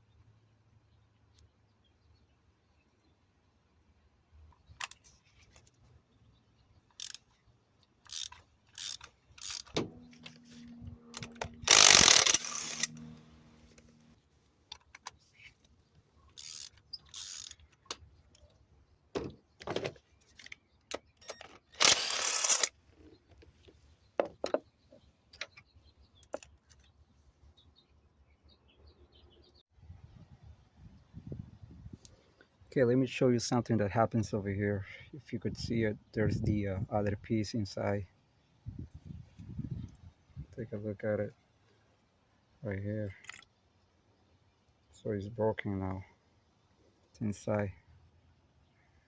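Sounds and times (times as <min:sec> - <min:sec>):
socket ratchet clicking: 0:06.9 - 0:07.3, 0:08.0 - 0:09.8, 0:11.2 - 0:13.1, 0:16.4 - 0:18.0, 0:21.2 - 0:22.7.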